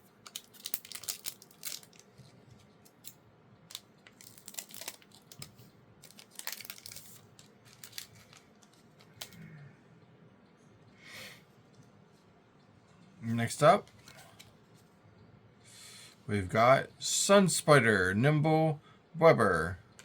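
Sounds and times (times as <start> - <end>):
foil wrapper tearing and crinkling: 0.2 - 2.2, 3.7 - 8.8.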